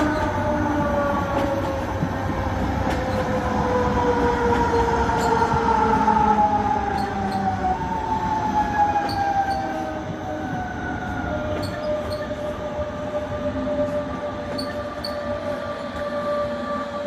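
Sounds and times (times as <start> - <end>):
train wheels squealing: 0.0 - 1.8, 2.9 - 3.6, 4.6 - 5.6, 6.3 - 12.9, 13.5 - 17.0
train rumble: 0.0 - 17.0.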